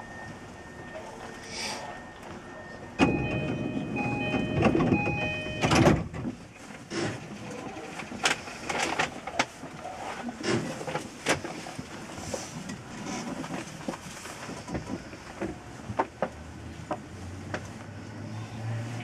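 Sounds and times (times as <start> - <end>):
train door closing chime: 0.9 - 6.1
doors shutting thud: 3.0 - 6.3
sliding doors rushing closed: 3.0 - 7.5.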